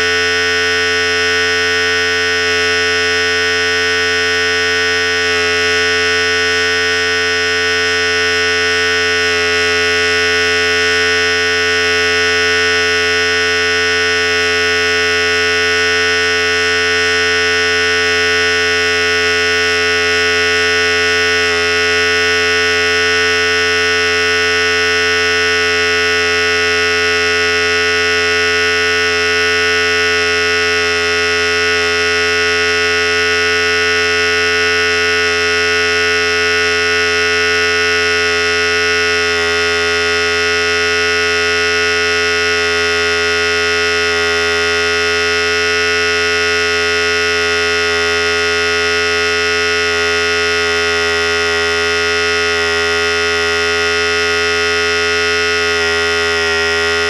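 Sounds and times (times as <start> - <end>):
electric hair clipper buzzing: 0.0 - 57.0.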